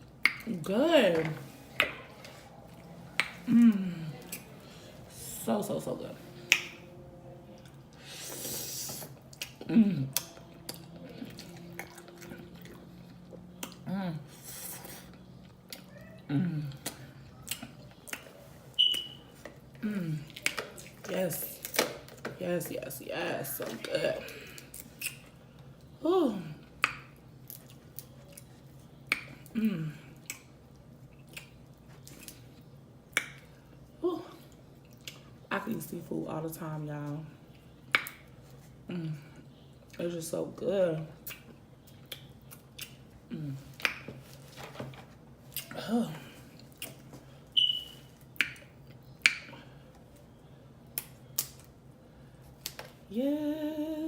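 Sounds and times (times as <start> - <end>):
falling mm hum: 0.0 - 15.4
person humming mmm: 3.5 - 4.4, 8.0 - 11.5, 16.2 - 17.0
breathy hiss: 8.0 - 9.2
wet mouth smacks and chewing: 8.9 - 13.8, 24.6 - 25.4, 26.8 - 29.5, 30.2 - 32.5, 41.2 - 43.1, 46.6 - 49.6
mouth smacking and clicks: 41.2 - 43.0.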